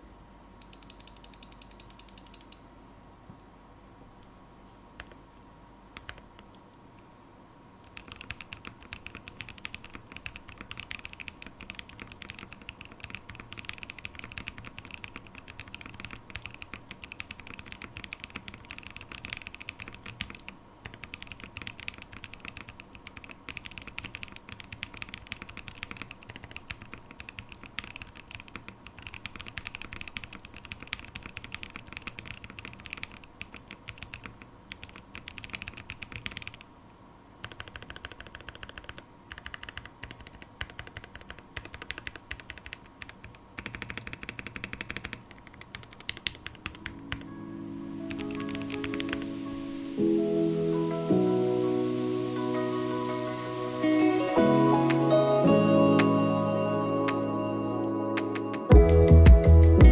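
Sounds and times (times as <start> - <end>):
faint steady hum: 0.0 - 59.9
mechanical keyboard typing: 0.6 - 2.6, 5.0 - 5.2, 6.0 - 6.5, 7.8 - 36.7, 37.4 - 47.3, 48.1 - 49.3.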